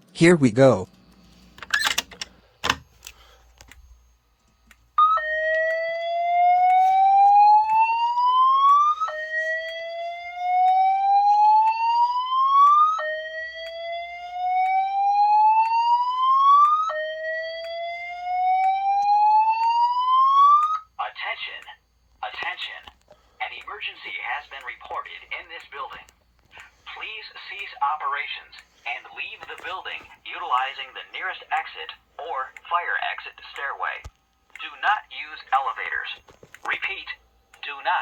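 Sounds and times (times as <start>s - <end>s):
rising whoop alarm tone: 5.0s - 20.9s.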